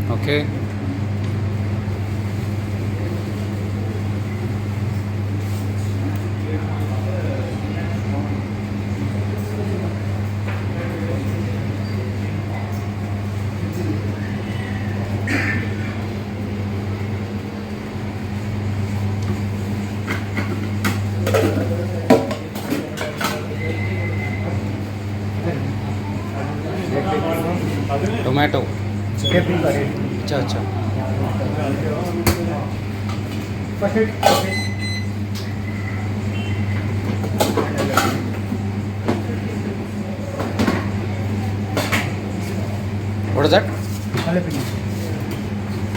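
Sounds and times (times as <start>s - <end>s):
machine hum: 0.0s - 44.1s.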